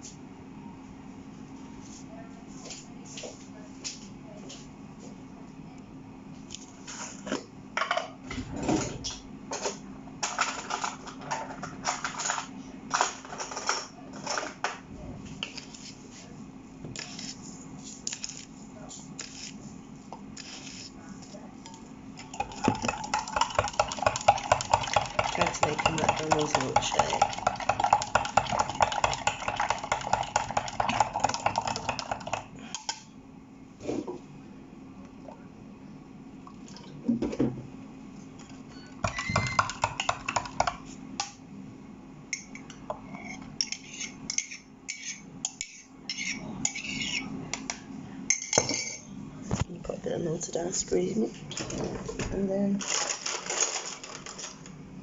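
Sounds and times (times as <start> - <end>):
utensils and dishes clattering: 9.5 - 14.8, 21.7 - 33.0, 39.0 - 40.8, 48.3 - 49.1, 51.5 - 54.7
steady low hum: 14.0 - 52.8
milkshake mixing rattle: 22.2 - 32.6, 39.0 - 40.9.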